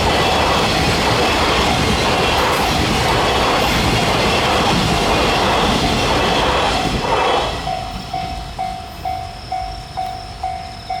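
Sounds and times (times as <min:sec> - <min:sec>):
freight wagons rattling on rails: 0:00.0 - 0:09.1
level-crossing warning bell: 0:07.5 - 0:11.0.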